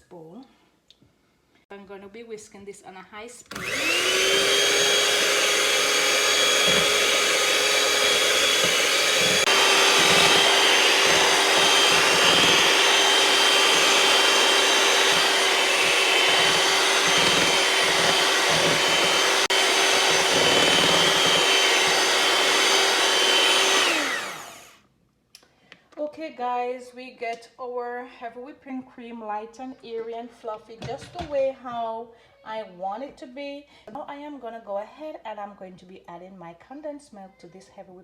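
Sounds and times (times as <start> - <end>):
electric mixer whipping cream: 3.5 - 24.8.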